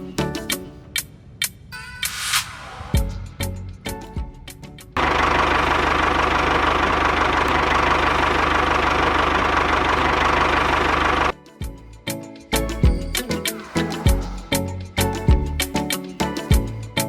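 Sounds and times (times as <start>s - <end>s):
background music: 0.0s - 5.0s, 11.3s - 17.0s
small engine running: 5.0s - 11.3s.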